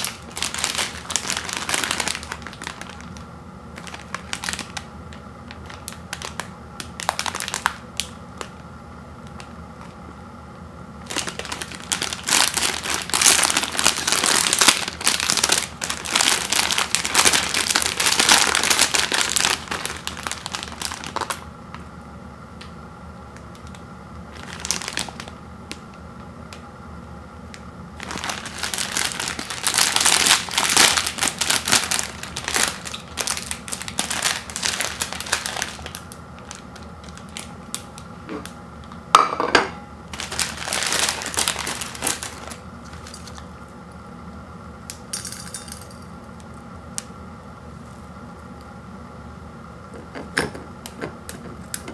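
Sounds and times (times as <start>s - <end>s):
plastic packaging crinkling: 0.0s - 8.6s, 9.2s - 10.1s, 11.0s - 21.9s, 23.3s - 26.6s, 27.5s - 38.6s, 40.1s - 43.6s.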